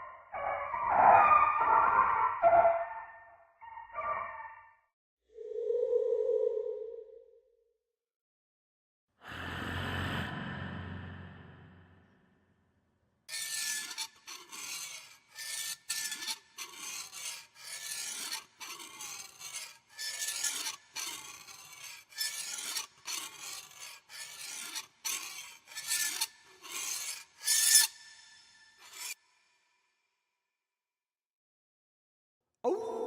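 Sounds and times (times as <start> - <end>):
rasping scraping strokes: 13.3 - 29.4.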